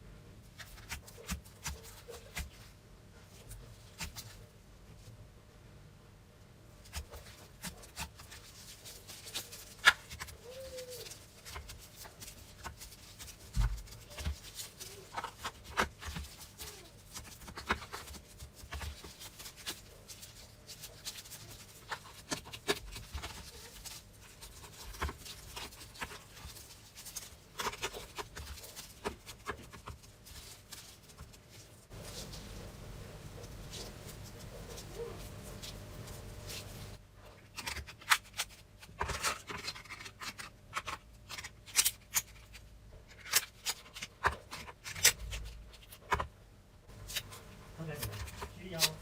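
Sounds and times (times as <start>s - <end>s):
slime squishing: 6.8s - 42.6s.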